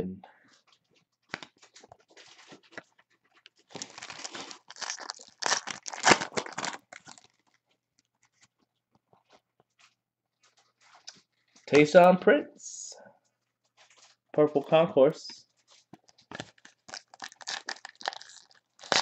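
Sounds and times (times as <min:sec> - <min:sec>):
foil wrapper crinkling and tearing: 0:01.3 - 0:08.5, 0:15.7 - 0:19.0.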